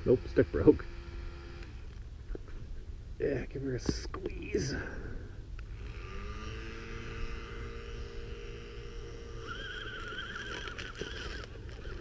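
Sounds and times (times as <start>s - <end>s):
electric motor whining: 0.0s - 2.1s, 5.6s - 12.0s.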